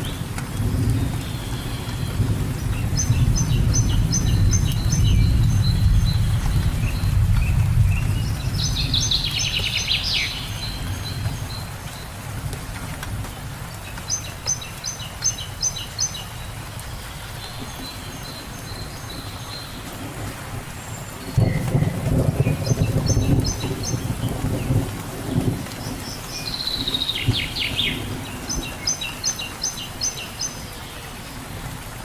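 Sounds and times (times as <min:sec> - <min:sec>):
birds chirping: 0:00.0 - 0:12.3, 0:13.3 - 0:31.6
low thunder rumble: 0:00.0 - 0:13.2, 0:17.4 - 0:28.9
steady rain: 0:00.0 - 0:32.0.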